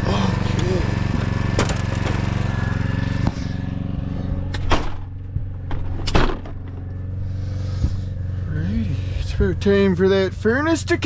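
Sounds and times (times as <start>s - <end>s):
generator engine humming: 0.0s - 11.0s
sharp knocks and clatters: 1.1s - 2.3s.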